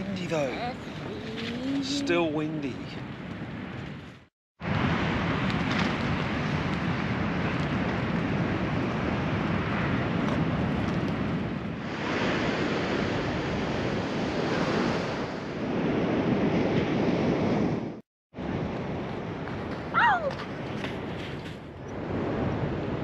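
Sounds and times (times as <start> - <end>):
wind on microphone: 0.0 - 23.0
surf washing on beach: 4.6 - 23.0.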